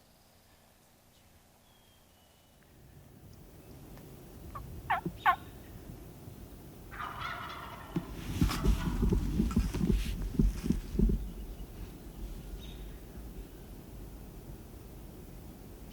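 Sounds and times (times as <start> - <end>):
turkey gobbling: 4.5 - 5.4, 6.9 - 9.2
low thumps: 8.0 - 11.4.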